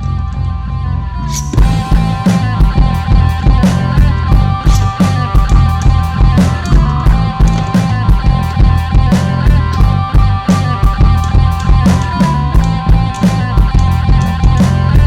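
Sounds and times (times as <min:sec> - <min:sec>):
rock music: 0:00.0 - 0:15.0
electric guitar: 0:01.3 - 0:15.0
driving drum beat: 0:01.5 - 0:15.0.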